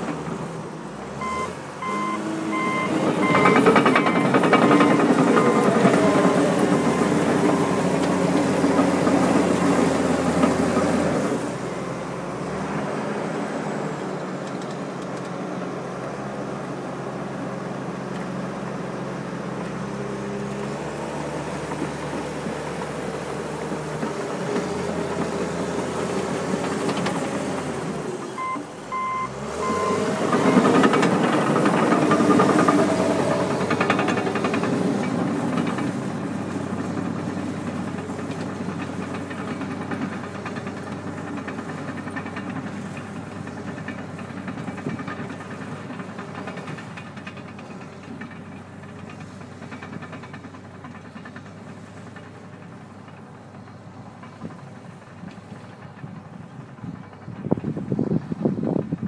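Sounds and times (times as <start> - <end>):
bulldozer diesel engine under load: 0.0 - 59.0
reverse alarm beeping: 1.2 - 4.3, 28.4 - 30.7.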